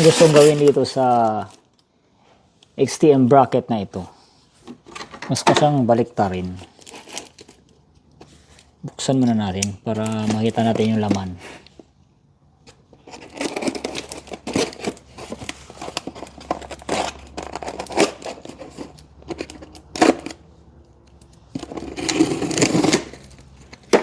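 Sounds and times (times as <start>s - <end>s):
packaging tearing and crinkling: 0.0s - 1.7s, 6.4s - 7.8s, 13.0s - 20.4s, 21.5s - 24.0s.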